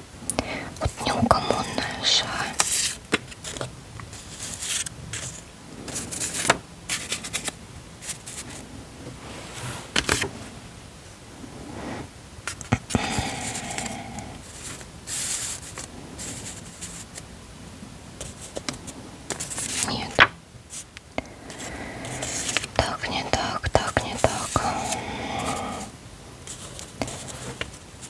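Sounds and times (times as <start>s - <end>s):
paper pages rustling: 2.5s - 8.6s, 9.3s - 10.4s, 12.5s - 17.3s, 18.2s - 20.9s, 21.5s - 22.8s, 26.5s - 28.0s.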